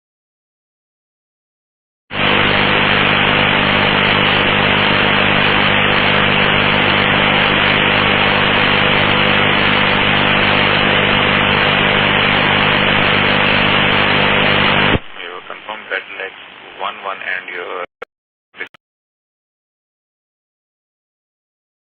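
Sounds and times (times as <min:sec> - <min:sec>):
radio static hiss: 0:02.1 - 0:18.8.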